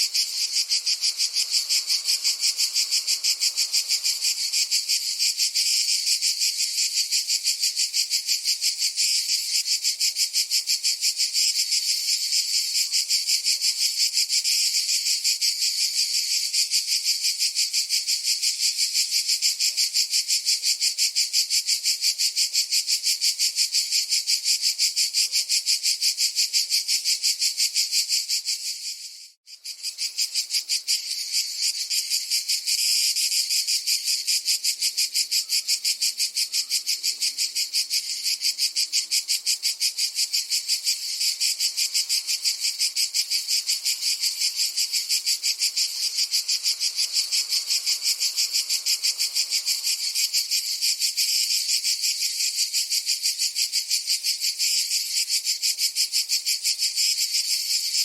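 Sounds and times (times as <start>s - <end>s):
cicadas buzzing: 0.0s - 58.0s.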